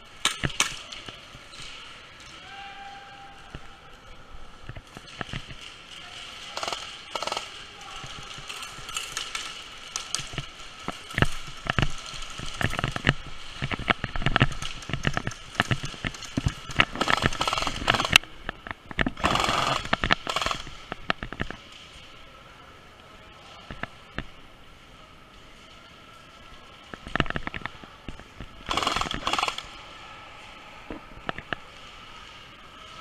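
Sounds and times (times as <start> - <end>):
airsoft gunfire: 16.8 - 18.2, 28.7 - 29.7.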